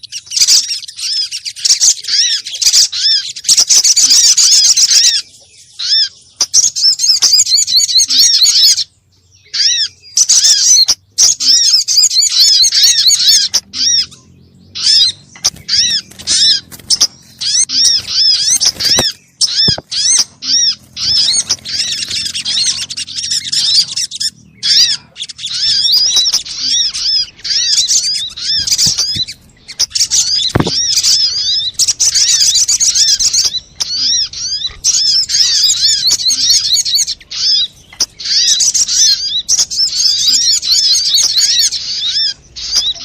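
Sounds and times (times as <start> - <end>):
songbird chattering chirps: 0.0 - 43.0.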